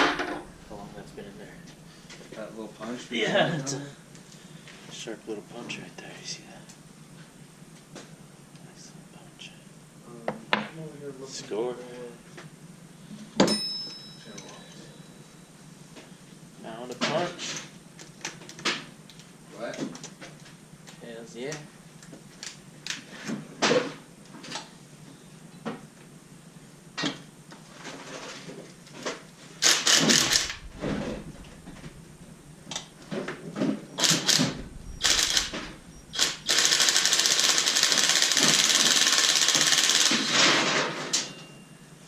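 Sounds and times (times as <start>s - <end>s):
impact wrench hammering: 0.0s - 0.6s.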